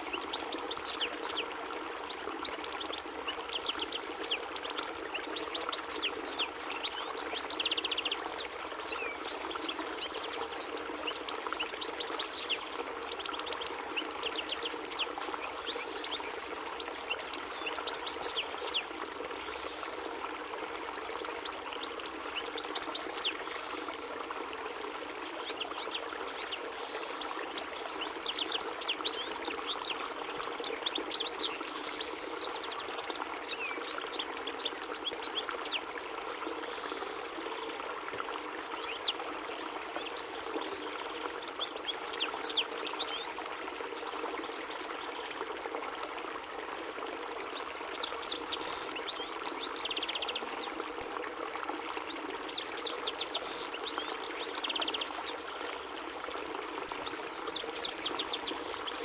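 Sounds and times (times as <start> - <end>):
goldfinch twittering: 41.4 - 43.4.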